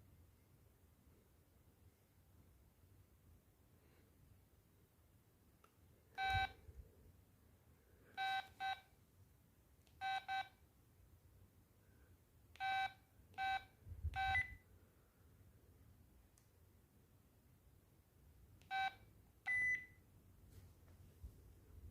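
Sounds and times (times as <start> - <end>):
phone keypad beeps: 6.2 - 6.6, 8.2 - 8.9, 10.0 - 10.6, 12.6 - 14.6, 18.6 - 20.0.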